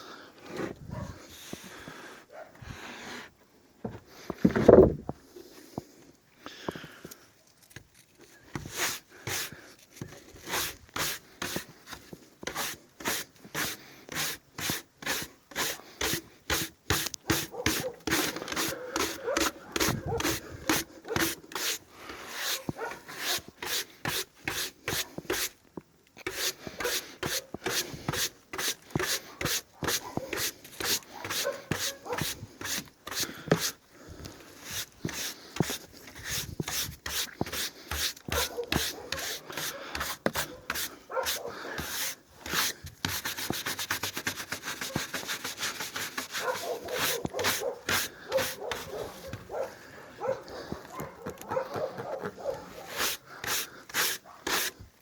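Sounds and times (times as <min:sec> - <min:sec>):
brush scrubbing wooden board: 0:08.6 - 0:09.6, 0:10.2 - 0:25.6, 0:26.2 - 0:33.8, 0:34.6 - 0:49.4, 0:51.8 - 0:54.8.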